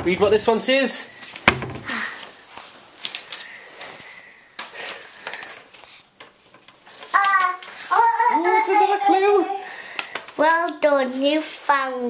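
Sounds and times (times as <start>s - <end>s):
paper crackling and rustling: 2.2s - 4.2s, 4.8s - 8.9s.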